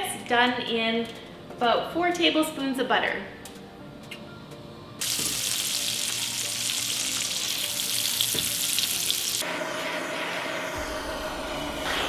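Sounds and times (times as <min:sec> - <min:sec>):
asparagus sizzling in butter: 0:05.0 - 0:09.4.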